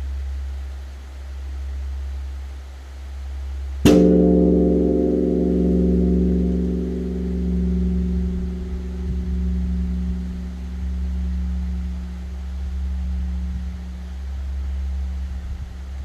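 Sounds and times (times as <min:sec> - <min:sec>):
large bell ringing with deep hum: 0:03.8 - 0:16.0
wooden log striking bronze bell: 0:03.9 - 0:16.0.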